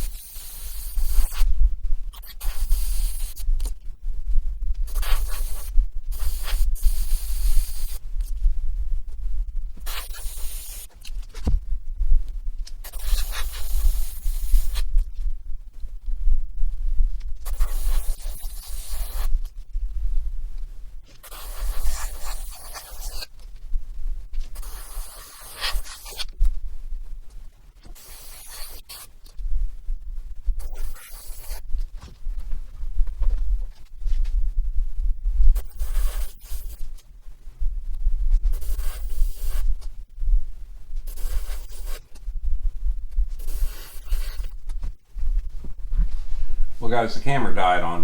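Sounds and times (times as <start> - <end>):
airbrush spraying hiss: 0.0 - 1.5, 2.1 - 3.7, 4.9 - 8.3, 9.8 - 10.9, 12.8 - 14.9, 17.4 - 19.4, 21.2 - 23.3, 24.6 - 26.3, 27.9 - 29.2, 30.6 - 31.6, 35.5 - 36.8, 38.5 - 39.7, 41.0 - 42.1, 43.3 - 44.6
steady low hum: 0.0 - 48.0.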